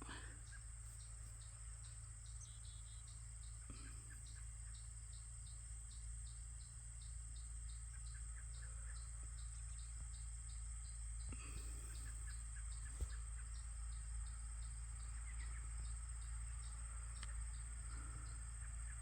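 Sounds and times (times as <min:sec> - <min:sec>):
crickets chirping: 0:00.0 - 0:19.0
faint bird chirps: 0:00.0 - 0:19.0.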